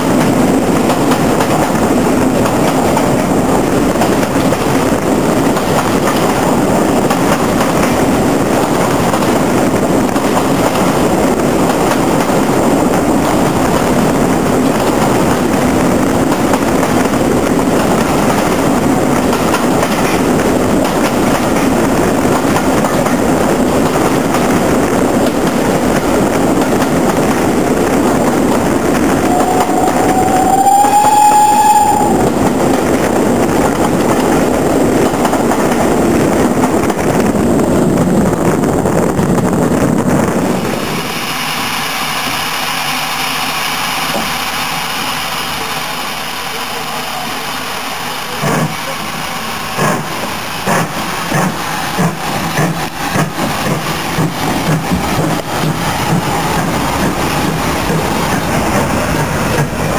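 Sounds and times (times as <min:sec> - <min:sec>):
steam train rumbling on track: 0:00.0 - 0:59.9
steam locomotive whistle: 0:29.2 - 0:32.5.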